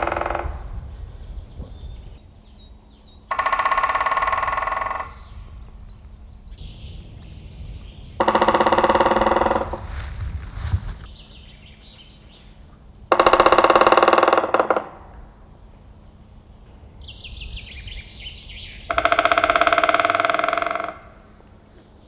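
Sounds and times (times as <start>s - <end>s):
woodpecker drumming on wood: 0.0s - 0.7s, 3.3s - 5.3s, 8.1s - 9.9s, 13.1s - 15.2s, 18.8s - 21.2s
small birds singing: 0.0s - 12.9s, 14.8s - 20.6s, 21.2s - 22.0s.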